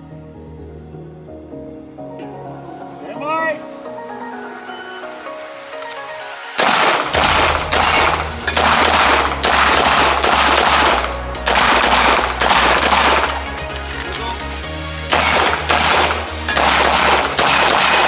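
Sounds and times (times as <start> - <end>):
rapid pistol shots: 6.6 - 13.5, 15.1 - 18.0
music with steady bass beat: 7.1 - 18.0.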